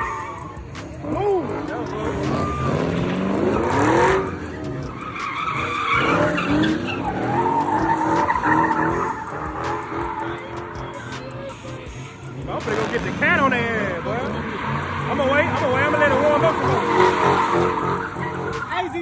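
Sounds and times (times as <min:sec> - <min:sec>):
car engine revving: 0:00.0 - 0:19.0
tyres skidding and squealing: 0:00.0 - 0:19.0.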